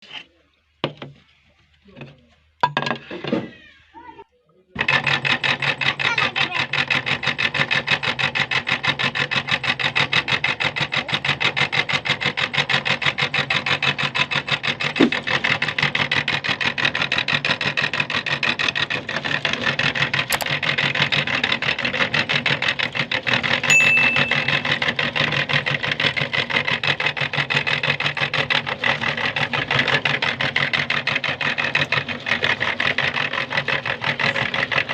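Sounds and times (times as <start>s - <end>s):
handling knocks and clicks: 20.3s - 20.5s
electric meat grinder whirring: 24.6s - 34.9s.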